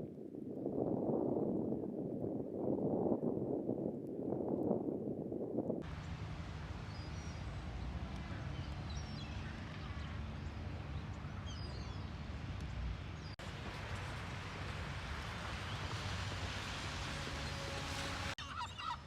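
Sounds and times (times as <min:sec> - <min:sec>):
outdoor rumble and hiss: 0:05.8 - 0:18.8
faint high bird calls: 0:18.4 - 0:19.0.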